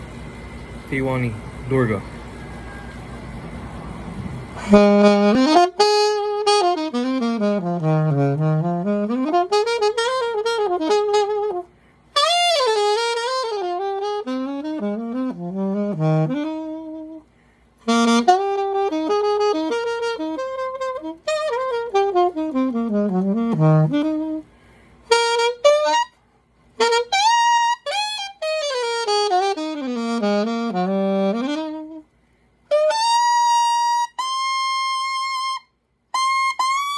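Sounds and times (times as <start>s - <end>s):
alto saxophone playing: 3.9s - 36.9s.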